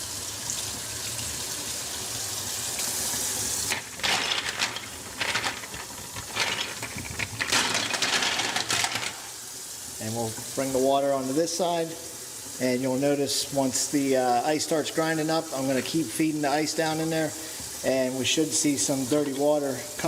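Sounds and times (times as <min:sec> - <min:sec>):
ice cubes clinking: 0:03.7 - 0:09.4.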